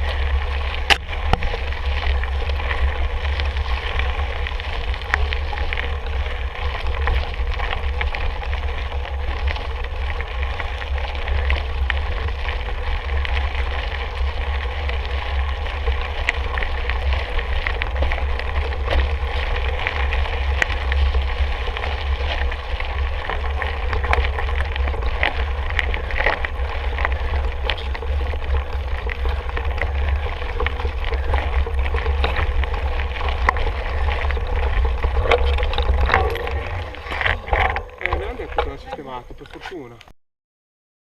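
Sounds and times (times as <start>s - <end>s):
bike rattling on rough trail: 0.0s - 40.1s.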